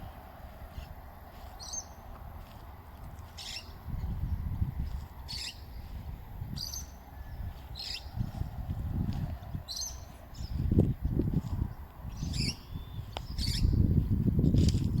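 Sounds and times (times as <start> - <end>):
bird calling: 3.4 - 3.8, 5.3 - 5.8.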